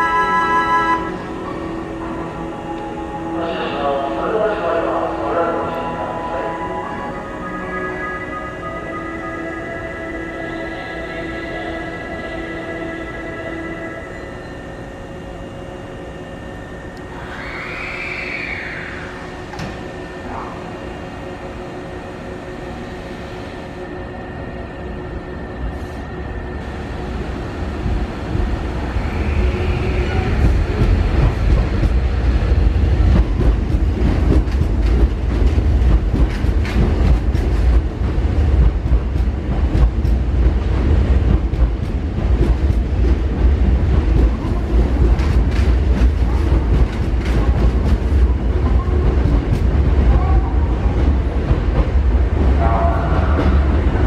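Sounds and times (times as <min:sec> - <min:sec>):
steady tone: 0:00.0 - 0:33.5
train rumbling: 0:00.0 - 0:54.0
train wheel clicks and rail clatter: 0:30.2 - 0:32.3, 0:33.0 - 0:50.3.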